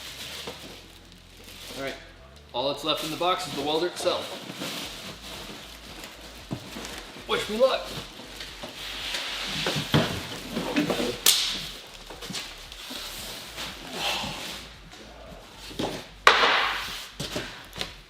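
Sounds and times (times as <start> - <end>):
cardboard rustling and scraping: 0.0 - 2.0, 2.9 - 18.0
knocks of cardboard and wood: 9.5 - 11.8, 15.8 - 18.0.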